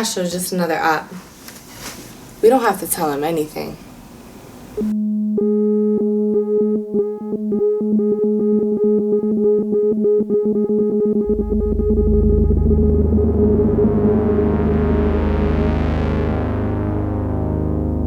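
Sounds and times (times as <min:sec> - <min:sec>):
low synth drone: 0:10.6 - 0:18.0
deep bass: 0:11.0 - 0:18.0
repeated short synth note: 0:11.2 - 0:18.0.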